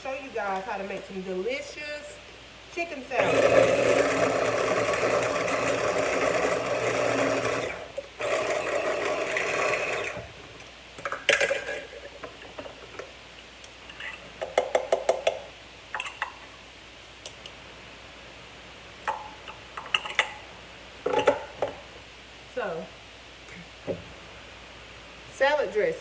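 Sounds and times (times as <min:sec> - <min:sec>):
electric food chopper motor: 0:03.2 - 0:10.3.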